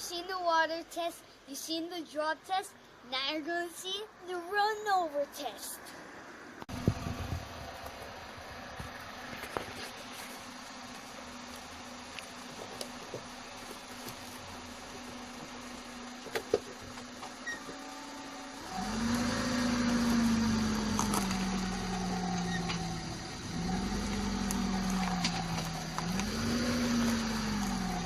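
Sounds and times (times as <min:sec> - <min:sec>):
vehicle engine revving: 0:06.7 - 0:28.0.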